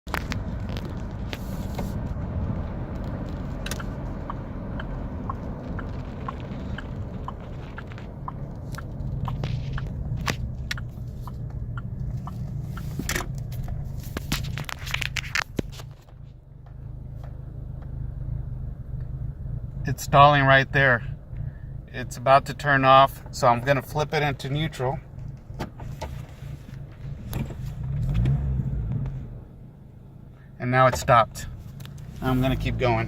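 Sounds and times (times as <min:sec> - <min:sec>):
irregular clicks and crackles: 0:02.9 - 0:17.4.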